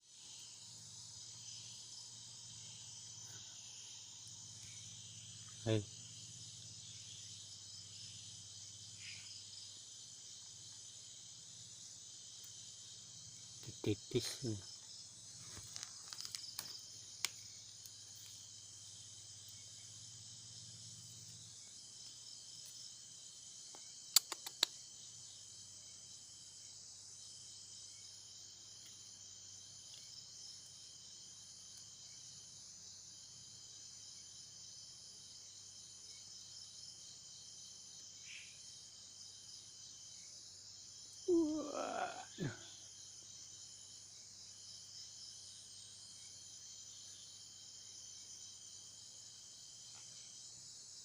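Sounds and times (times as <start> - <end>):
crickets chirping: 0.0 - 51.0
thin single insect tone: 0.0 - 51.0
sharp clicks: 24.1 - 24.8.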